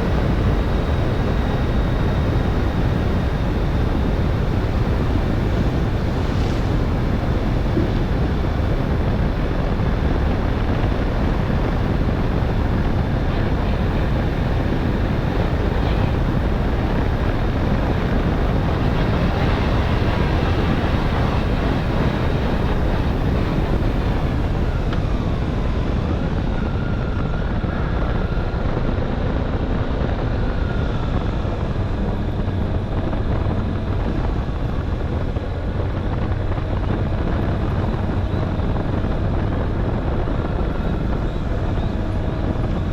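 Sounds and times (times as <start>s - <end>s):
faint thin whine: 0.0s - 28.8s
wind rushing on microphone: 0.0s - 42.9s.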